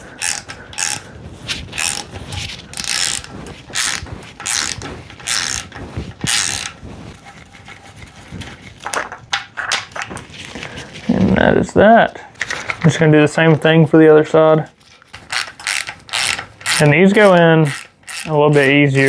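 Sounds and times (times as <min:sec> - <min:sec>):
ratchet clicking: 0:00.2 - 0:01.1, 0:01.8 - 0:06.7, 0:15.3 - 0:18.4.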